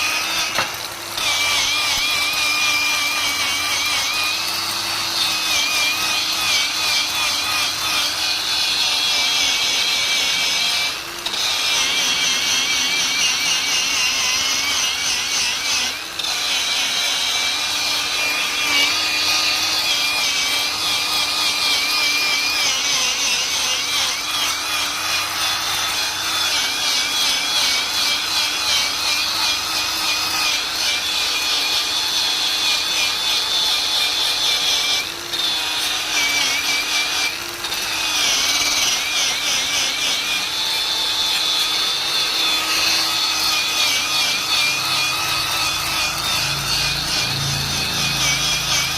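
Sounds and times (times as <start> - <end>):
power tool motor hum: 0.0 - 48.9
wire brush scratching metal: 41.2 - 48.9.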